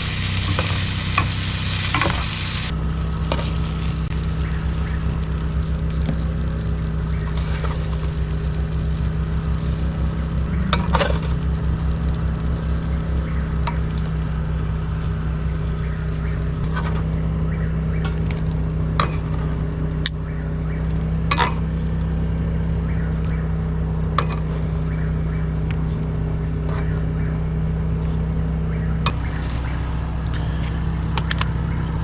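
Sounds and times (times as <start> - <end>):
engine running at steady drone: 0.0 - 32.0.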